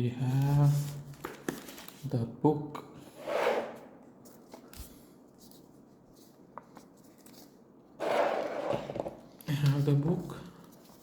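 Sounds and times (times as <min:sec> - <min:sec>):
comic book packaging rustling: 0:00.3 - 0:02.1.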